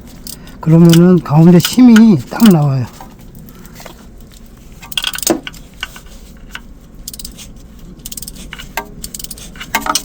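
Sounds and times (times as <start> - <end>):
wrench metallic clicks: 0.2 - 2.6, 4.8 - 5.9, 6.5 - 7.4, 8.0 - 10.0.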